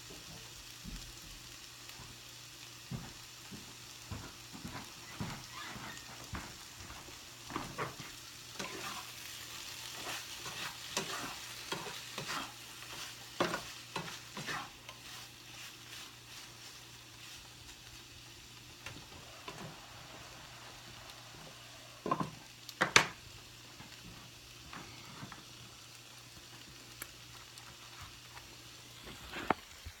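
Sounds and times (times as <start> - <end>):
fruit sizzling in a frying pan: 0.0 - 30.0
utensil scraping a pan: 7.6 - 9.2, 9.9 - 17.4.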